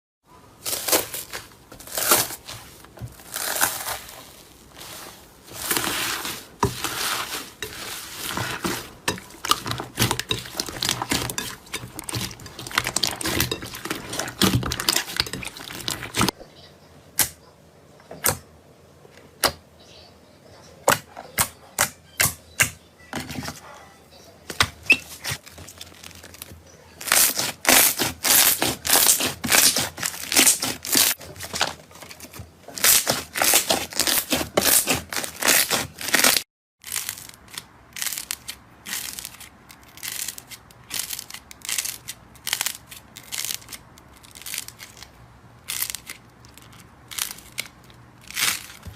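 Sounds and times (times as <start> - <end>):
slime crackling and popping: 0.6 - 4.8, 25.2 - 31.8, 32.8 - 48.9.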